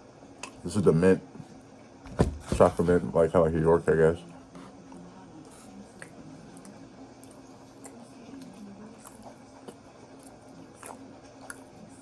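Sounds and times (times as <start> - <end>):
chewing and wet mouth sounds: 4.9 - 12.0.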